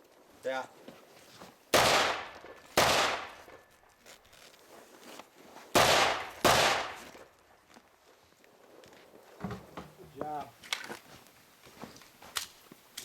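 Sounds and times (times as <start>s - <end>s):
gunshots with echo: 1.7s - 3.6s, 5.8s - 7.0s.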